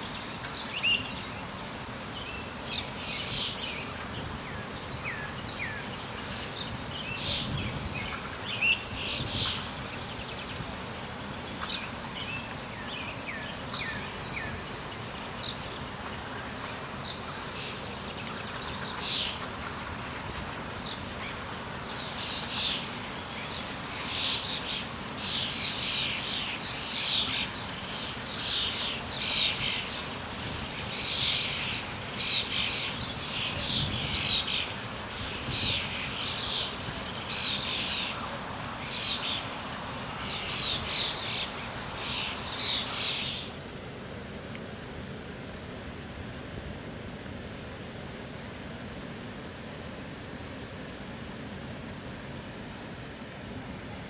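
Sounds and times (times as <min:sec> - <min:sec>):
songbirds chirping: 0:00.0 - 0:43.7
steady background hiss: 0:00.0 - 0:54.0.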